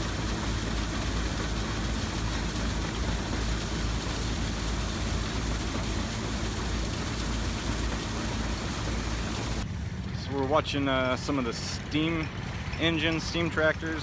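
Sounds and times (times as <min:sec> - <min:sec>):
steam machinery running: 0:00.0 - 0:09.6.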